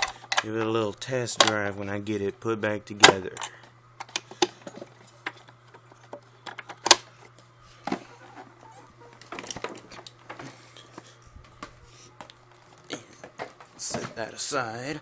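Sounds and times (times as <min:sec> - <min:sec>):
low steady hum: 0:00.0 - 0:15.0
vacuum cleaner parts clicking: 0:03.0 - 0:07.1, 0:07.8 - 0:14.2.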